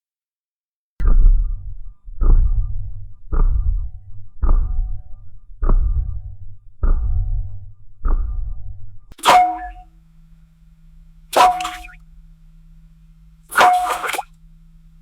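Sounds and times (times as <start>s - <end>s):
sharp metallic knock ringing: 9.1s - 9.9s, 11.4s - 12.0s
hot water pipes knocking: 11.3s - 12.0s, 13.5s - 14.3s.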